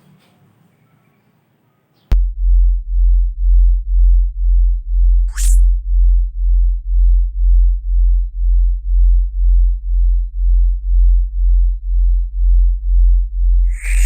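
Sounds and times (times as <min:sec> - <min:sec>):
subwoofer pulsing deep bass tone: 0:02.1 - 0:14.0.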